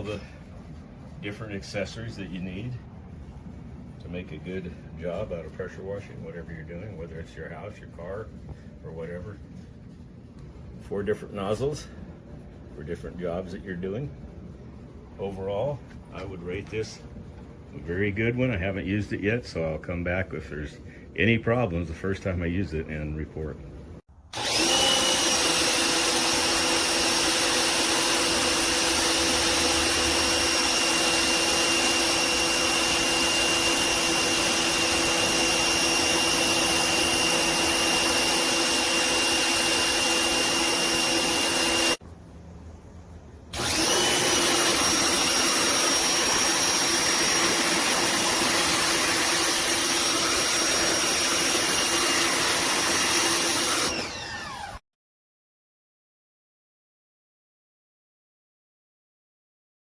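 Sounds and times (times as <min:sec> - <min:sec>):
pressure washer running: 0:24.4 - 0:42.0, 0:43.5 - 0:54.8.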